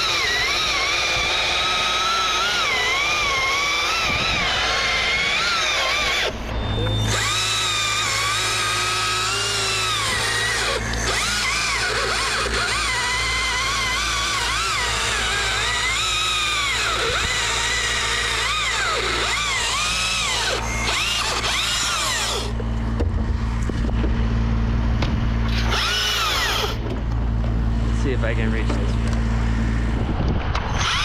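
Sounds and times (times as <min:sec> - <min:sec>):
electric chainsaw motor whine: 0:00.0 - 0:31.0
steady low hum: 0:19.5 - 0:31.0.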